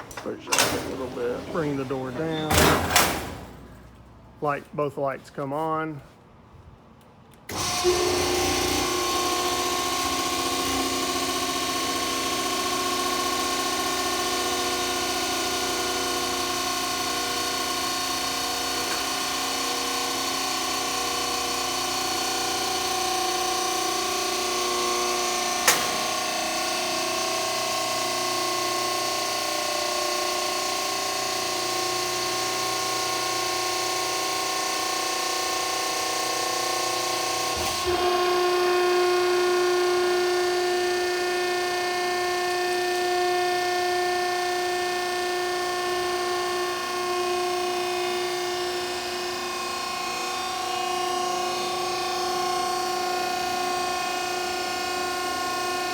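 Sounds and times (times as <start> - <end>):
electric motor and hydraulic pump whine: 0.0 - 3.0, 7.4 - 55.9.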